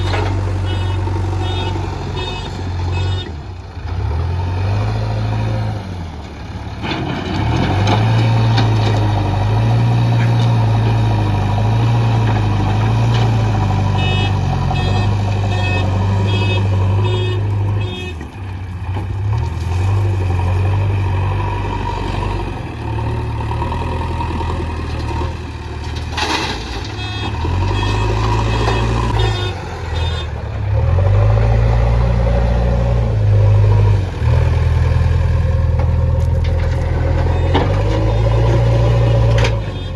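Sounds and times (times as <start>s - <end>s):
diesel engine working under load: 0.0s - 39.9s
reversing alarm beeping: 14.0s - 17.4s, 37.2s - 39.9s.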